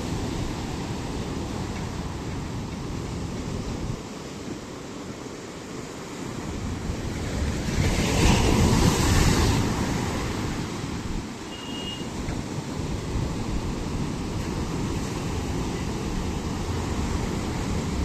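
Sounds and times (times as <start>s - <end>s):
sea waves breaking on shore: 0.0s - 18.0s.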